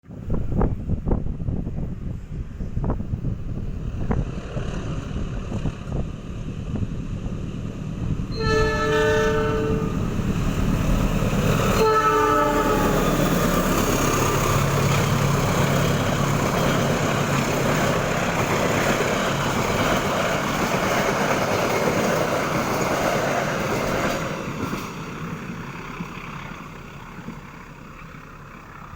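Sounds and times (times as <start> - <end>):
train rumbling past: 0.0 - 28.9
locomotive horn blasts: 8.3 - 10.2, 11.7 - 13.1.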